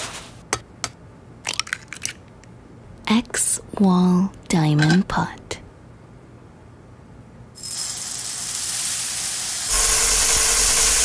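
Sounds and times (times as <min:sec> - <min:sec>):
steam hissing from pressure cooker valve: 0:07.6 - 0:11.0.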